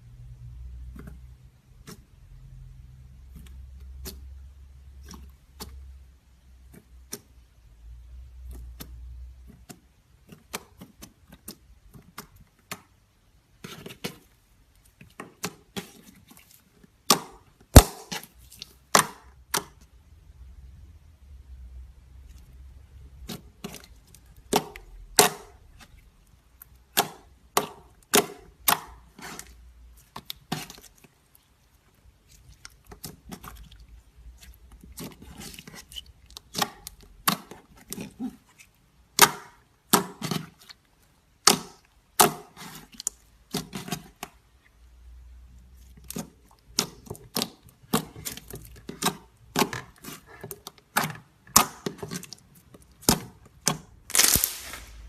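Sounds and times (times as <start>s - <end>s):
slime clicking and popping: 53.0s - 54.9s.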